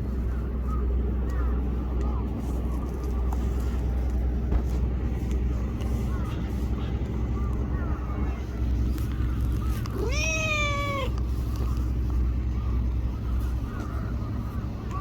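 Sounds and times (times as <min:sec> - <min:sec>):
steady low rumble: 0:00.0 - 0:15.0
cat meowing: 0:09.9 - 0:11.2.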